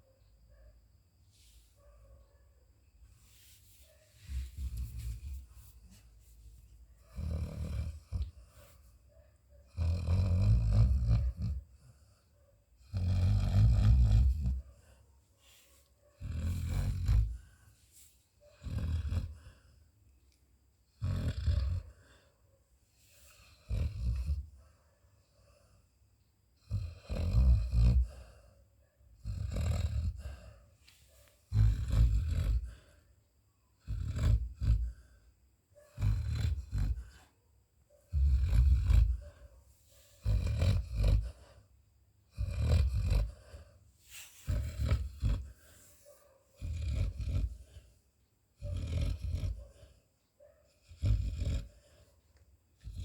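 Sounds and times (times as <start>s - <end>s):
dog snoring: 7.0s - 8.8s, 9.6s - 15.0s, 16.1s - 17.7s, 18.4s - 19.8s, 21.0s - 22.3s, 23.1s - 24.7s, 26.6s - 28.5s, 29.2s - 30.6s, 31.5s - 33.0s, 33.8s - 35.2s, 35.8s - 37.3s, 38.1s - 41.6s, 42.3s - 48.0s, 48.6s - 52.2s, 52.8s - 53.0s.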